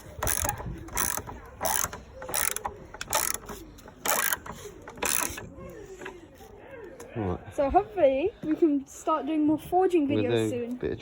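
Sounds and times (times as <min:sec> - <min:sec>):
ratchet clicking: 0:00.0 - 0:06.1.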